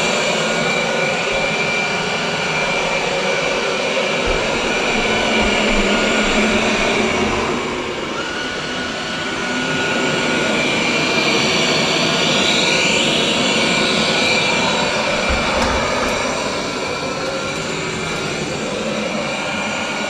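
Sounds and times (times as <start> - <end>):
robot vacuum whirring: 0.6 - 9.7.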